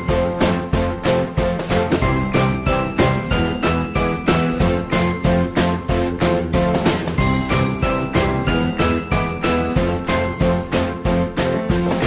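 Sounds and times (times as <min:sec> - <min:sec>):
upbeat music with jingling bells: 0:00.0 - 0:12.0.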